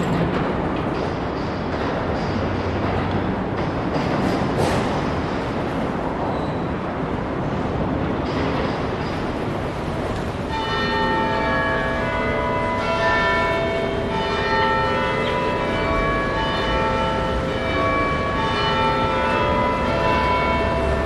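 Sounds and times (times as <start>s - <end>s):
steady background noise: 0.0s - 21.0s
bells ringing: 10.4s - 21.0s.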